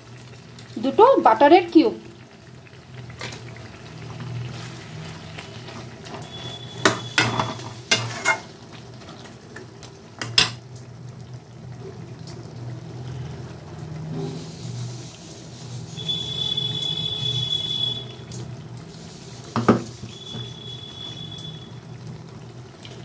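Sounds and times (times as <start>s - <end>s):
gravy sizzling: 0.0s - 23.0s
spoon clinking against pan: 6.8s - 8.4s.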